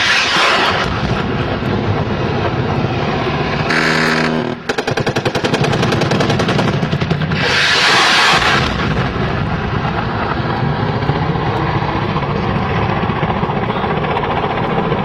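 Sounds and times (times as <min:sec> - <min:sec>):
loud hissing weapon fire: 0:00.0 - 0:02.2, 0:03.6 - 0:11.1
helicopter engine and rotor noise: 0:00.0 - 0:15.0.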